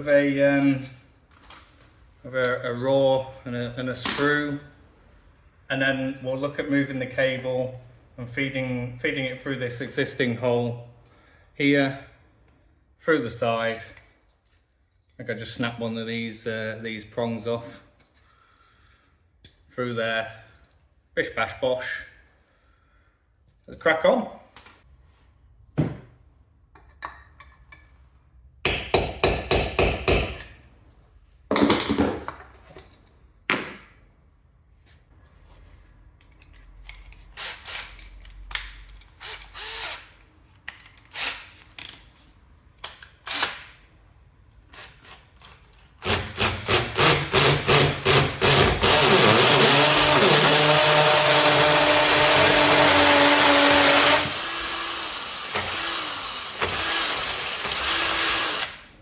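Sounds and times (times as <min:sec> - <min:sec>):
power drill running: 0:39.6 - 0:40.0, 0:46.0 - 0:58.8.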